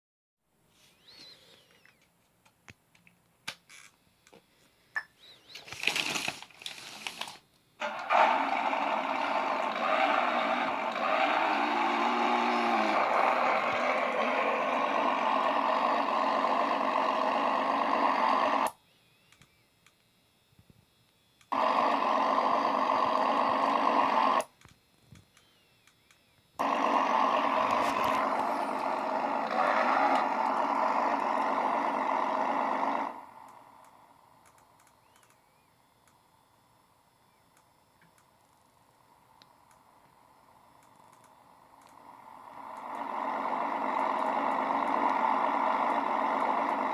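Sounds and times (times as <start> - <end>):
simulated engine from small speaker: 7.8 - 19.5, 21.4 - 24.6, 26.6 - 46.9.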